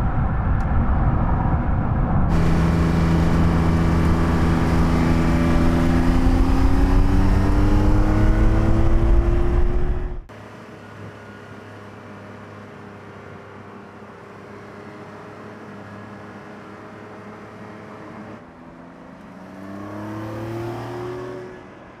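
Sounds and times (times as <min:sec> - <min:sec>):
car engine accelerating: 0:02.3 - 0:10.3, 0:17.1 - 0:21.9.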